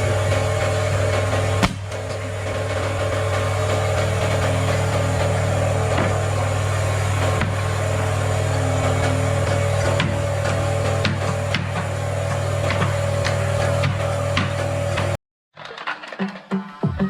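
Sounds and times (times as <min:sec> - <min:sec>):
woodworking machinery humming: 0:00.0 - 0:15.2
wood knocking: 0:01.6 - 0:02.2.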